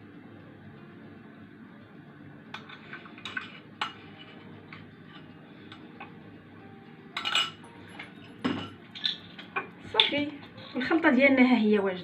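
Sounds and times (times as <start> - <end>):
utensil clatter: 2.5 - 6.1, 7.2 - 10.2.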